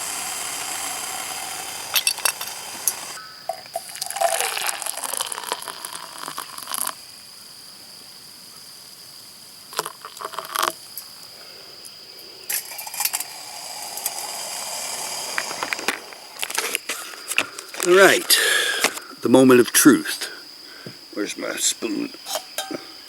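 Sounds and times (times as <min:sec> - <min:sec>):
camp cooking gear clinking and knocking: 0:01.9 - 0:07.0, 0:15.8 - 0:19.0, 0:22.2 - 0:23.0.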